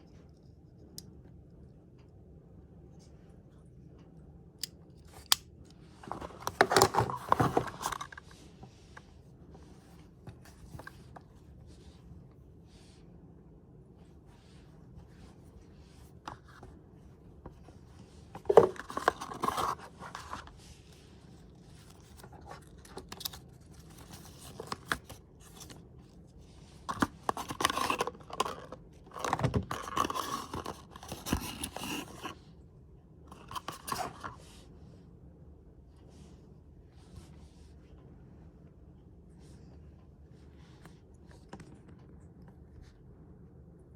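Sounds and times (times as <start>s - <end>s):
packaging rustling and tearing: 26.9s - 32.4s.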